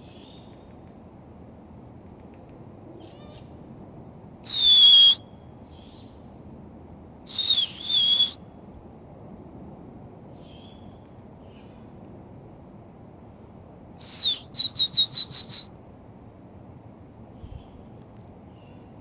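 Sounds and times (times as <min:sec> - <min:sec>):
owl whistled screech: 0:04.5 - 0:05.2, 0:07.3 - 0:08.4, 0:14.0 - 0:15.7.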